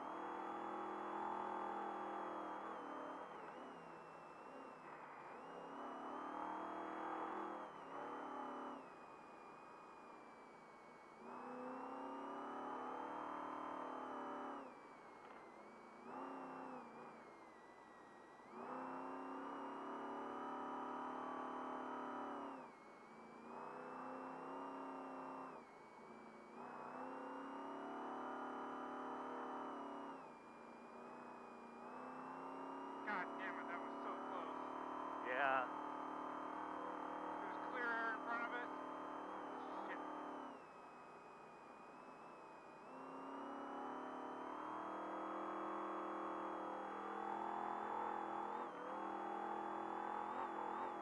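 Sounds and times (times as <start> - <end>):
truck engine revving hard: 0.1 - 3.8, 5.5 - 8.8, 11.2 - 14.6, 18.6 - 22.7, 23.4 - 25.6, 26.5 - 30.3, 30.9 - 40.6, 42.9 - 51.0.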